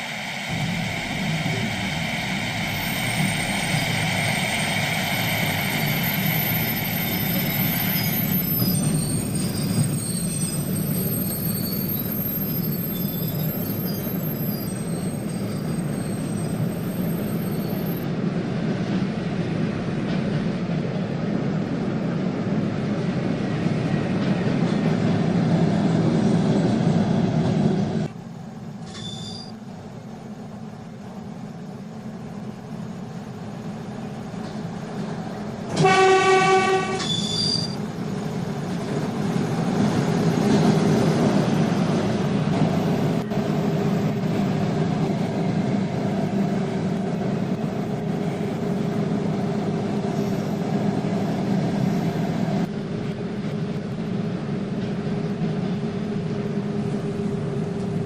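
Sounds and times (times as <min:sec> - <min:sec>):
steady train whine: 0:00.0 - 0:58.0
train rumbling and rattling past: 0:00.0 - 0:58.0
short high whistle: 0:28.9 - 0:29.5, 0:36.8 - 0:37.8
train horn blast: 0:35.7 - 0:37.3.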